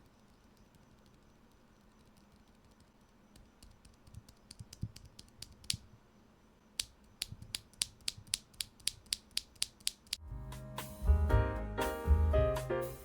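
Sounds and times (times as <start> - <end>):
mechanical keyboard typing: 0.0 - 5.9, 6.8 - 10.2.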